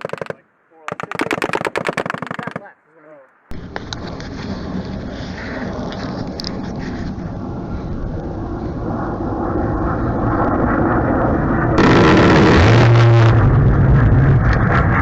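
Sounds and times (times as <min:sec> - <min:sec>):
low hum: 0:03.3 - 0:15.0
jet aircraft roaring overhead: 0:03.5 - 0:15.0.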